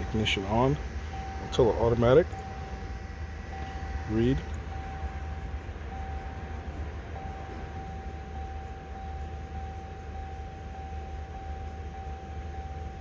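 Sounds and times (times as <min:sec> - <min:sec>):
steady high electronic tone: 0:00.0 - 0:05.3
low hum: 0:00.0 - 0:06.3.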